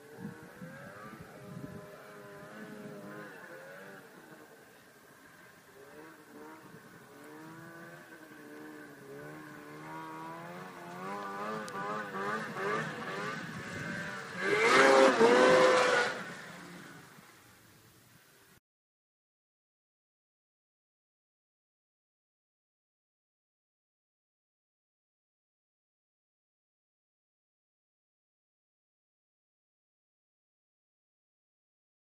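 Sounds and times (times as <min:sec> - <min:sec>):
snowmobile engines revving: 0:00.0 - 0:17.4.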